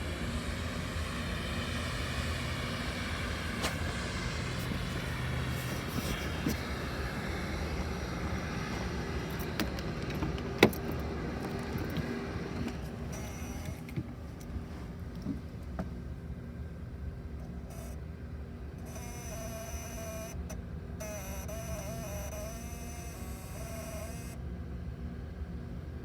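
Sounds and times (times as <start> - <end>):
electrical buzz: 0.0 - 9.6, 11.3 - 13.9, 18.8 - 24.4.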